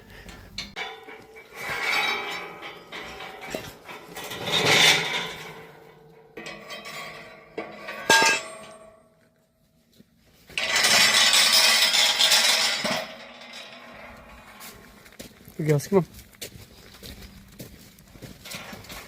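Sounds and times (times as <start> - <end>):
metal gate clanking: 0.0 - 9.1, 10.6 - 15.1, 18.4 - 19.0.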